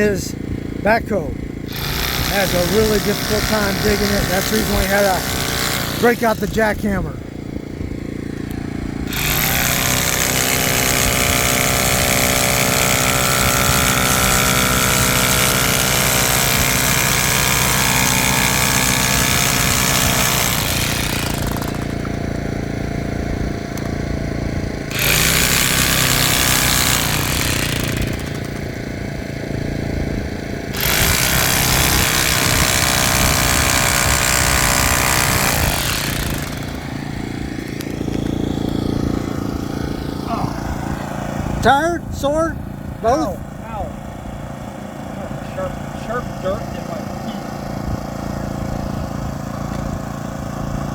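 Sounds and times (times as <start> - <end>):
engine drone: 0.0 - 50.9
jackhammer breaking hard soil: 1.6 - 6.7, 8.2 - 22.9, 24.8 - 29.4, 30.6 - 39.6.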